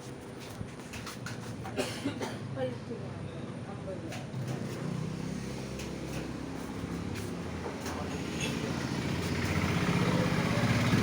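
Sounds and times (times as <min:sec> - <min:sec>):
vehicle engine humming: 0:04.9 - 0:11.0.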